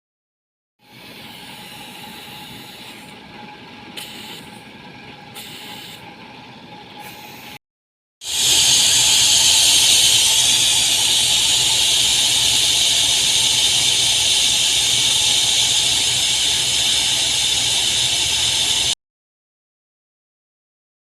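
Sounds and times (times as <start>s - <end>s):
gas hissing from pipework: 3.9s - 4.6s, 5.4s - 6.1s, 8.2s - 19.0s.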